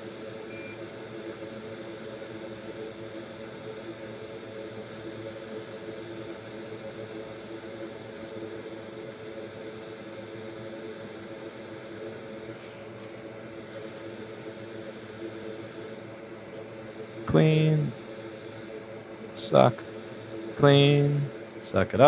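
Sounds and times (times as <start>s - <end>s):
electric fan whirring: 0.0s - 22.0s.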